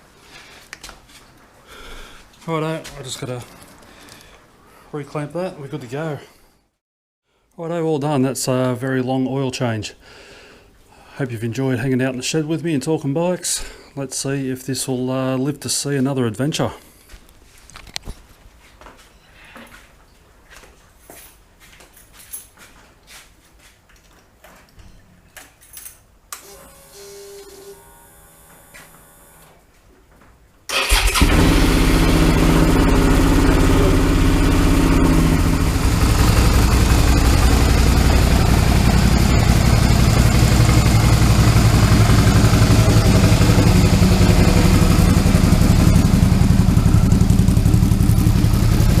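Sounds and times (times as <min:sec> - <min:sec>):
motorcycle engine idling: 0:31.2 - 0:49.0.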